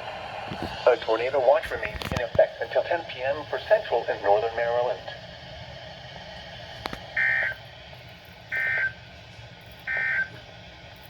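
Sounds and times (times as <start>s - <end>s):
two-tone warbling data bursts: 7.2s - 7.6s.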